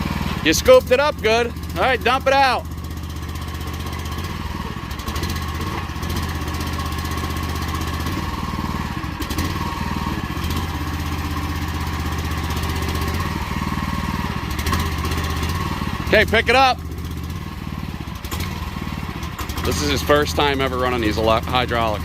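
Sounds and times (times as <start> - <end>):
small gas engine running: 0.0 - 22.0.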